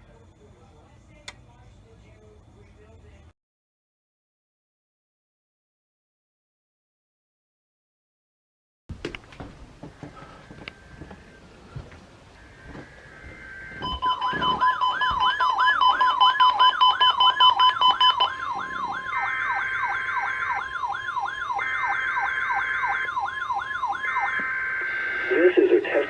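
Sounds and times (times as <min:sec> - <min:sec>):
steady warning alarm tone: 0:09.9 - 0:26.0
warbling siren: 0:10.6 - 0:25.8.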